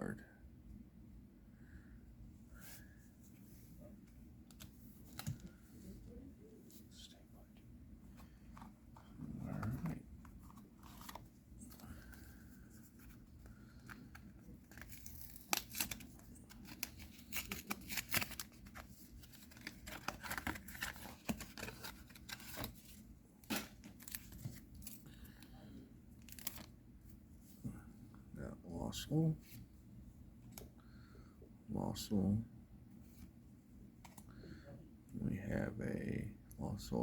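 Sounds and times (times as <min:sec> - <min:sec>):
wrapper crinkling and tearing: 0:14.6 - 0:22.7.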